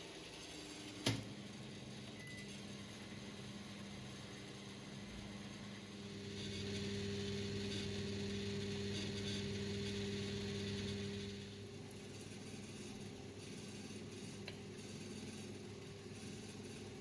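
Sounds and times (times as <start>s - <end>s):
kitchen appliance motor whirring: 3.9s - 13.3s.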